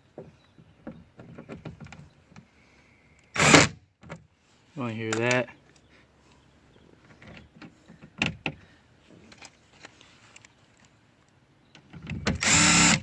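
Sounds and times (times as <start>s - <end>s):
cordless impact driver running: 12.4s - 13.0s.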